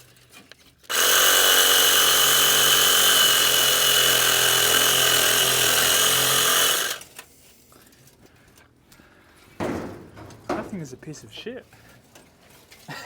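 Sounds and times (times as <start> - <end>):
power tool whining: 0.9 - 7.3
faint knocks: 9.6 - 11.0.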